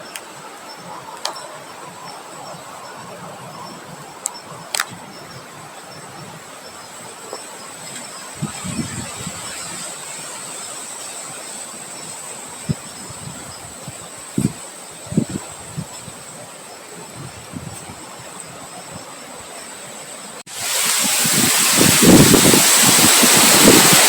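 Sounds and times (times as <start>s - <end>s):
wind blowing: 0.0s - 24.0s
sharp clicks: 4.2s - 5.0s.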